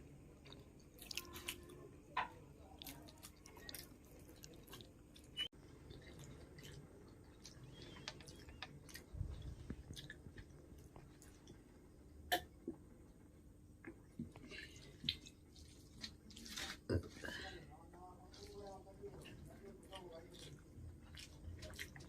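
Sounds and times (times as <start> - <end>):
person chewing food: 0.3 - 12.8, 18.4 - 22.0.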